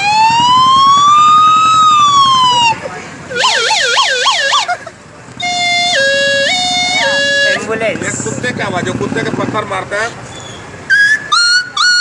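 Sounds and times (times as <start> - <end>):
ambulance siren: 0.0 - 4.8, 5.4 - 7.6.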